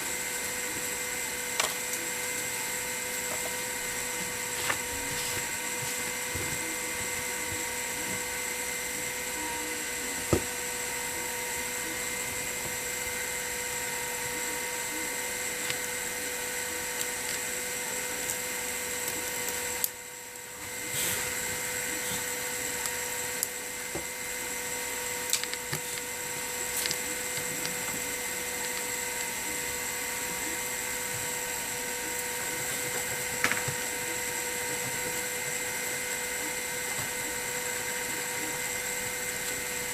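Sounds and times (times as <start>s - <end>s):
small electric motor whining: 0.0s - 39.9s.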